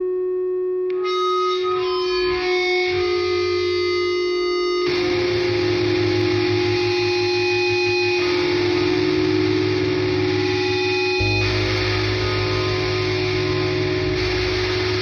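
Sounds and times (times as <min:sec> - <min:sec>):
instrumental music with drone: 0:01.3 - 0:15.0.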